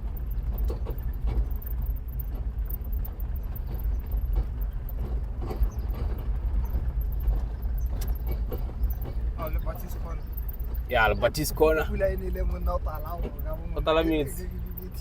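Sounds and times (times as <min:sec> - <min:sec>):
car road and engine rumble: 0:00.0 - 0:15.0
small knocks and rattles: 0:00.0 - 0:15.0.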